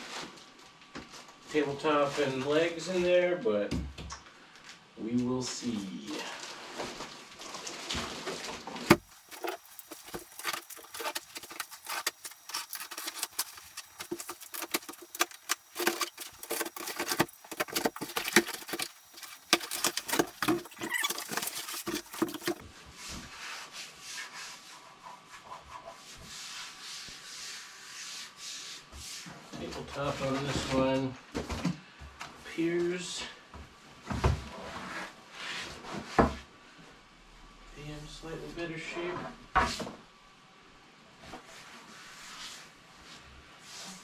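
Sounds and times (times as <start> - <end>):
cardboard and foam rustling: 6.2 - 23.4.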